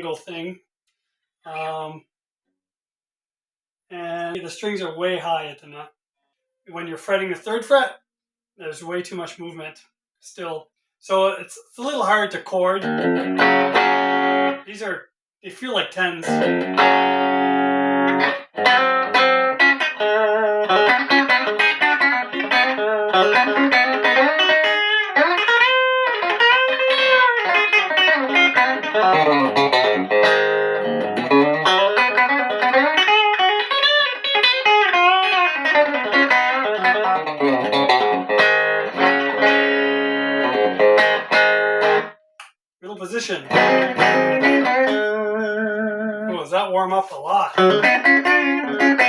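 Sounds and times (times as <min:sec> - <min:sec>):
electric guitar with string bends: 0:12.8 - 0:14.7, 0:16.1 - 0:42.2, 0:43.3 - 0:46.5, 0:47.5 - 0:49.0.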